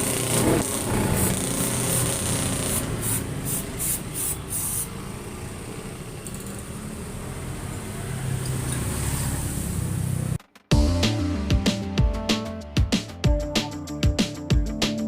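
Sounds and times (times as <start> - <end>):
scooter engine idling: 0.0 - 8.4.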